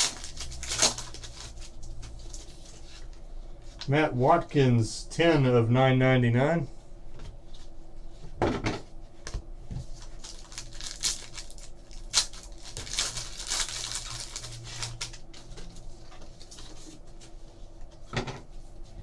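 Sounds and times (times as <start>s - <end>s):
card pack wrappers crinkling: 0.0s - 2.7s, 9.9s - 15.8s.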